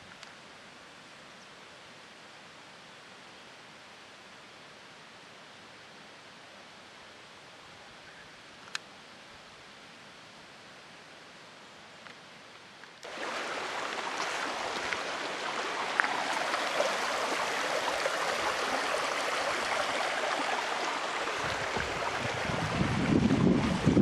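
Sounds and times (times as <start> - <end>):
stream babbling over stones: 13.0 - 24.0
wind buffeting microphone: 20.8 - 24.0.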